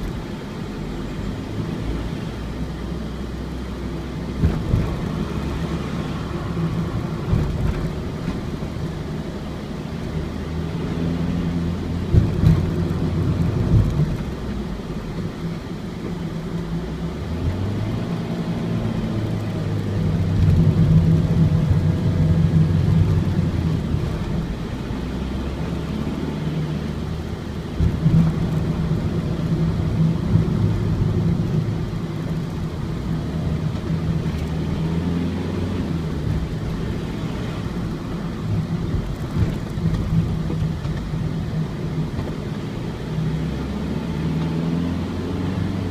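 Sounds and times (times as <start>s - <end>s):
diesel engine running: 0.0s - 45.9s
road knocks: 4.3s - 5.8s, 6.6s - 8.9s, 12.0s - 14.7s, 27.7s - 34.7s, 36.1s - 42.7s.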